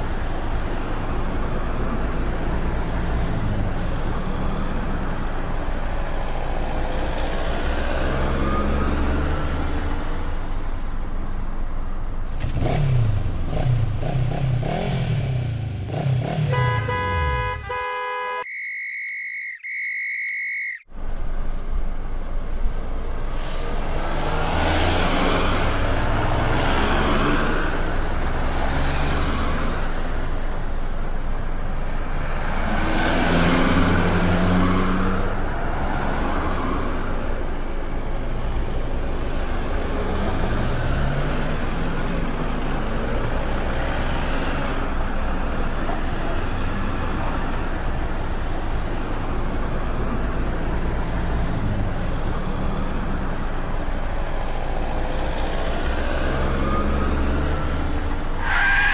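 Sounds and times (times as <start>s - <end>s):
engines running: 0.0s - 17.8s
vehicles passing: 0.0s - 18.5s, 20.9s - 58.9s.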